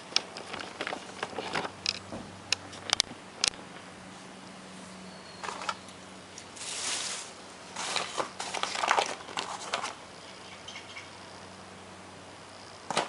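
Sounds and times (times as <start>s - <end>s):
brushing rustle: 4.0s - 5.8s, 6.4s - 10.0s.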